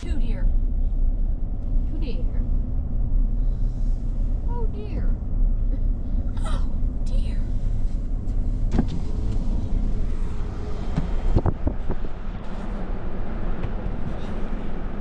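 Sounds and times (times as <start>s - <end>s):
wind buffeting microphone: 8.2s - 15.0s.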